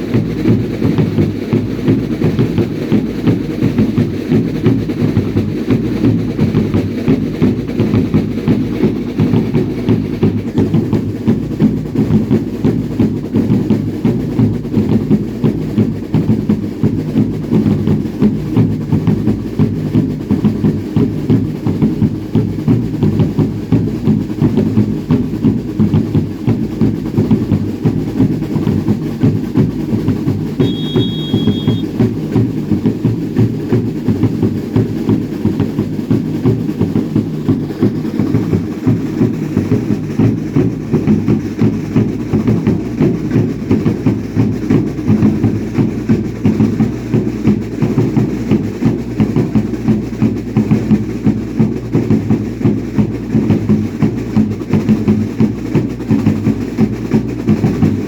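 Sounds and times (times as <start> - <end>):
dance drums beating: 0.0 - 58.0
high whistle: 30.6 - 31.9.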